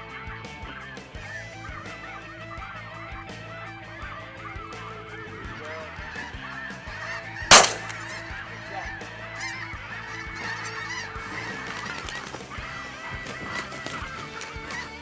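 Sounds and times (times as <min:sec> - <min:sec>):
geese honking: 0:00.1 - 0:15.0
shotgun blast: 0:07.5 - 0:08.1.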